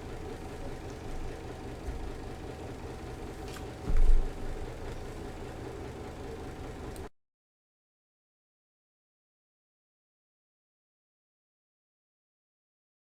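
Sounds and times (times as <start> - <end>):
faint hum: 0.0 - 7.1.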